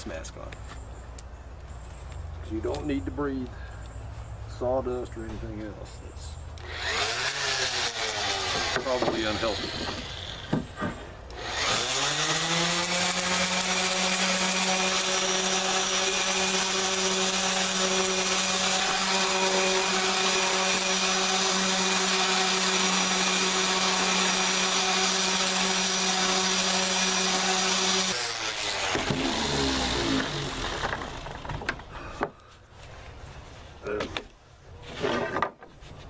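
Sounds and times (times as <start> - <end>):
electric sander running: 6.6 - 10.5, 11.4 - 31.4.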